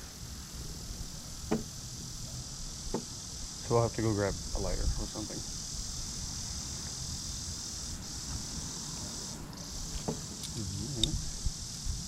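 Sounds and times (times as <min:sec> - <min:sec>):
insect chorus: 0:00.0 - 0:12.0
sharp clicks: 0:10.4 - 0:11.2.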